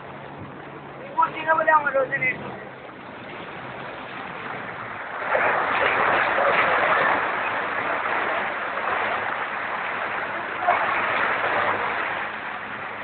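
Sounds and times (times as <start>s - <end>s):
floodwater rushing: 0.0s - 13.0s
faint voices: 6.0s - 12.2s.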